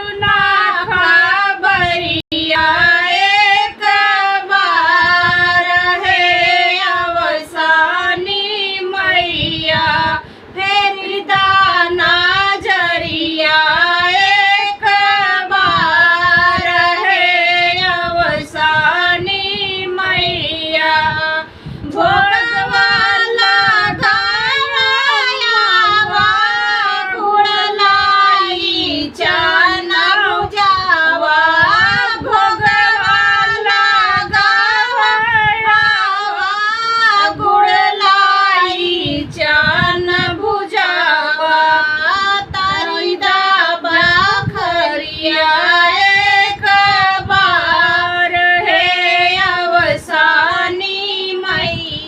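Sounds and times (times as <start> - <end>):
woman singing folk song: 0.0 - 52.0.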